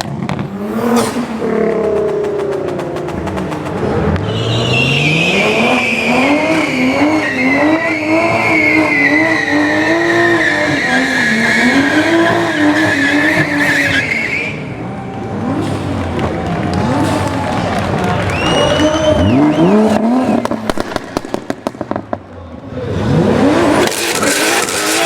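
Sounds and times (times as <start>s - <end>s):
car engine revving: 0.0s - 25.0s
tyres squealing: 4.2s - 14.7s.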